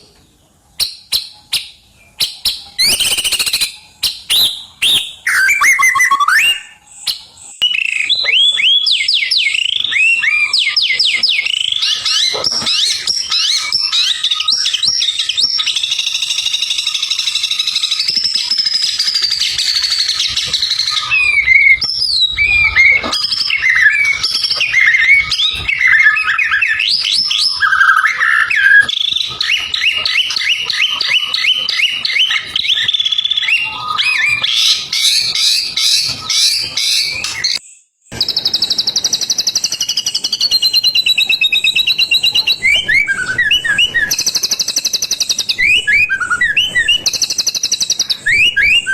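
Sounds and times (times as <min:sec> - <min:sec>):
songbird singing: 0:00.0 - 0:48.9.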